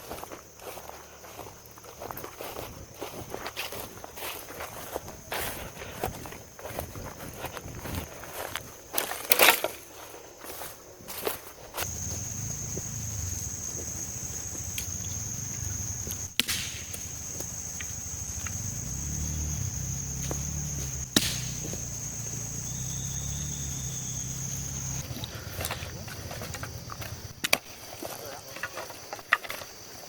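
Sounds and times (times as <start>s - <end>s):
high-pitched insect trill: 0.0s - 30.0s
low rumble: 11.9s - 27.4s
sharp knocks: 21.0s - 21.9s.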